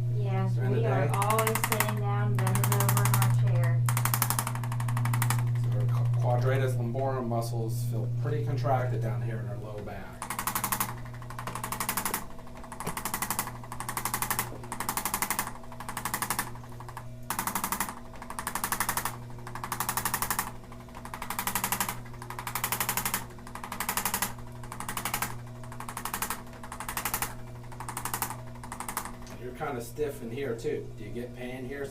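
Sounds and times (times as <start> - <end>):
massager humming: 0.0 - 31.9
massager rapid tapping: 1.1 - 6.4, 10.2 - 29.3.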